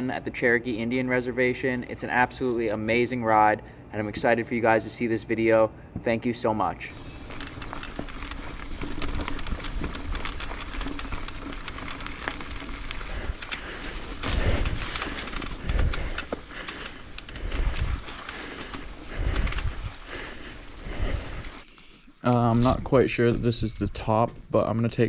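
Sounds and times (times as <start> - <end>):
bike clicks and rattles: 6.9 - 22.8
bike tyres on dirt trail: 6.9 - 23.0
low thumps: 14.0 - 16.5.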